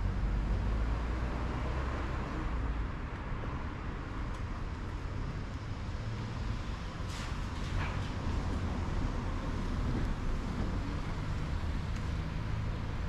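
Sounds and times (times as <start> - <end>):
street traffic rumble: 0.0 - 13.0.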